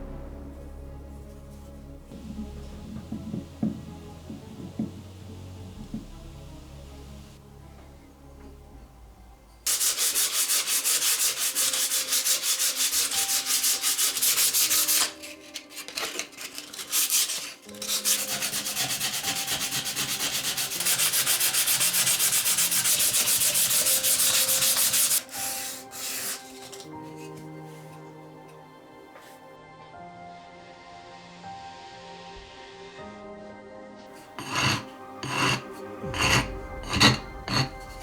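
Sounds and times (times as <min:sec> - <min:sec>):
sandpaper scraping: 0:09.7 - 0:27.4, 0:34.1 - 0:38.0.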